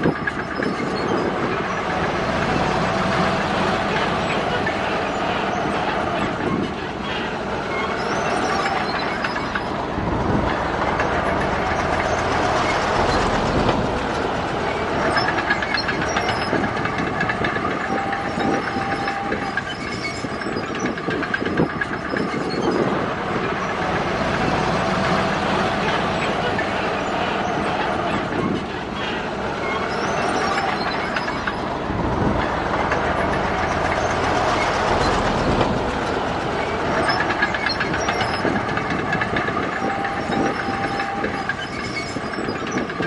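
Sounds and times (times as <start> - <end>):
diesel engine under load: 0.0 - 43.0
steel tracks clattering: 0.0 - 43.0
brief squeals: 7.7 - 9.8, 17.9 - 23.0, 29.6 - 31.8, 39.8 - 43.0.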